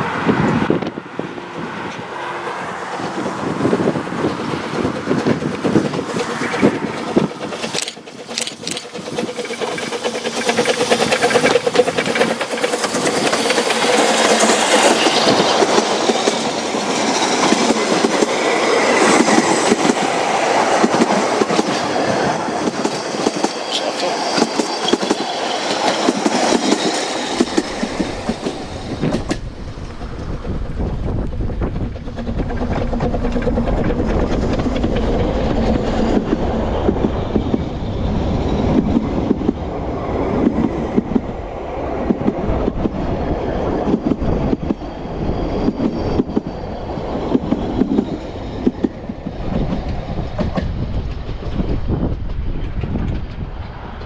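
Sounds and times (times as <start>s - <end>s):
steam train wheels rumbling: 0.0s - 54.0s
clatter over rail joints: 4.2s - 18.4s, 20.8s - 37.7s.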